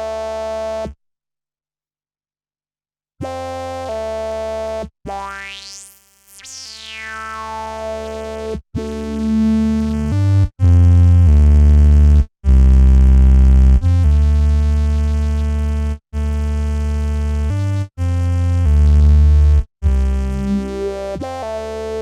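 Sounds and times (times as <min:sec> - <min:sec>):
synthesizer low bass notes: 0:10.0 - 0:16.0, 0:16.7 - 0:21.6.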